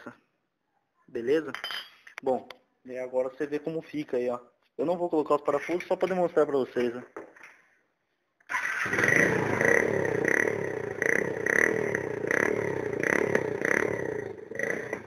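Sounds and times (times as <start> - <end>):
motorbike engine running: 8.8 - 15.0.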